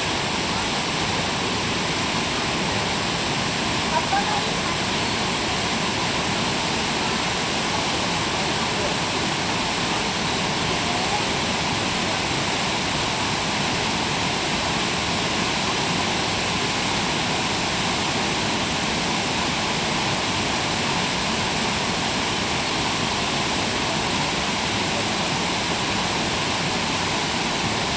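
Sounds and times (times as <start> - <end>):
waterfall rushing: 0.0 - 27.9.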